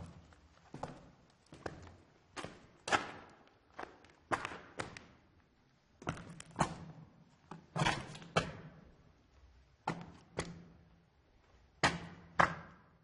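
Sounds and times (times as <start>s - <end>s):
echoing footsteps on concrete: 0.0s - 9.1s, 9.7s - 13.0s.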